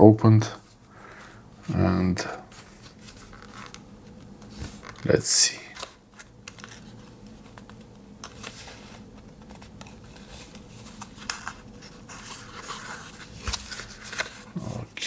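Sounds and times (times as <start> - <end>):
faint steady hum: 0.0 - 15.0
cardboard and paper rustling: 5.7 - 14.9.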